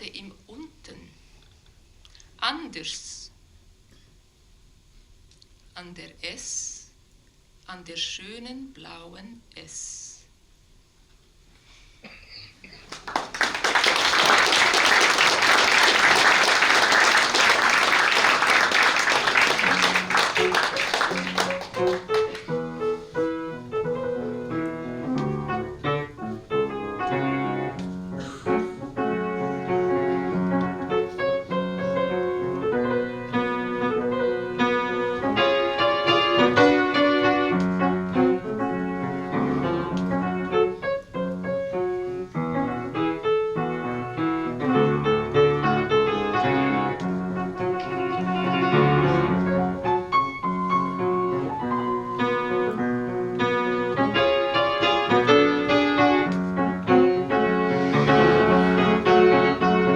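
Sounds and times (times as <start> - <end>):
solo piano: 13.0 - 59.9.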